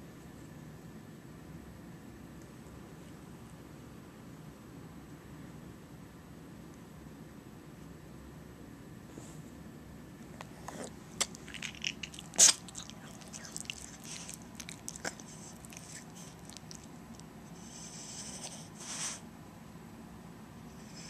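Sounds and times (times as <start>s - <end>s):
dog mouth clicks and smacks: 10.4s - 17.3s
dog hissing snore: 17.6s - 19.2s.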